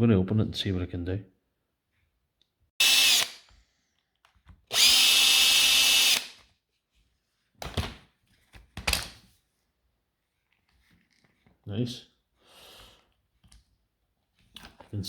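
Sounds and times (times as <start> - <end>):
electric screwdriver running: 2.8 - 3.5, 4.7 - 6.4.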